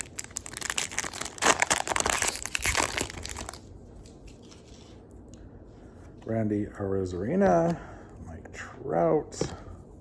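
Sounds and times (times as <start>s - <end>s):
card pack wrapper tearing and crinkling: 0.0s - 3.7s.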